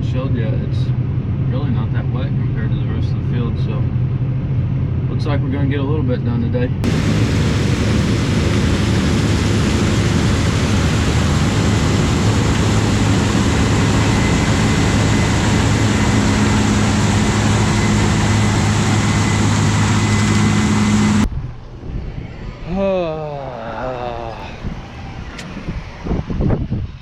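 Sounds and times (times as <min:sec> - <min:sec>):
harvester engine hum: 0:06.8 - 0:26.6
faint high whine: 0:06.8 - 0:27.0
loud mechanical rush: 0:06.8 - 0:27.0.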